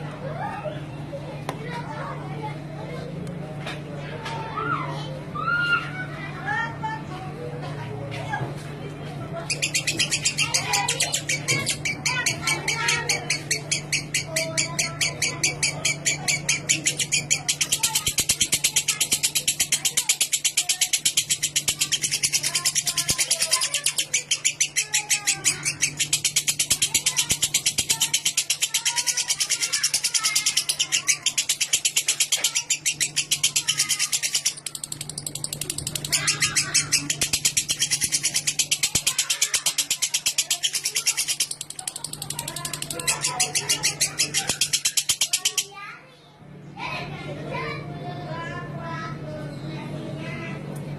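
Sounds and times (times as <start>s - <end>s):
steady low hum: 0.0s - 45.6s
lovebird shrill chattering: 9.5s - 45.7s.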